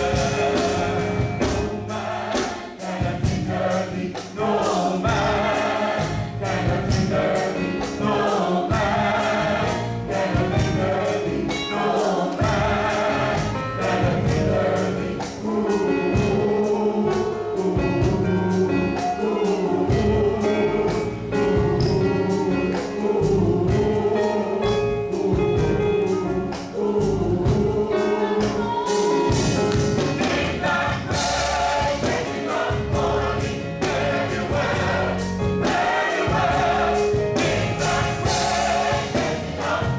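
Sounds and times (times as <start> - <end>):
band with steady beat: 0.0 - 39.9
gospel choir singing: 0.0 - 39.9.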